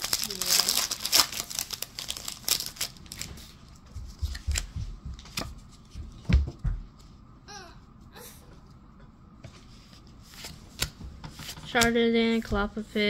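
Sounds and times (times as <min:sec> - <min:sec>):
foil wrapper tearing and crinkling: 0:00.0 - 0:03.4.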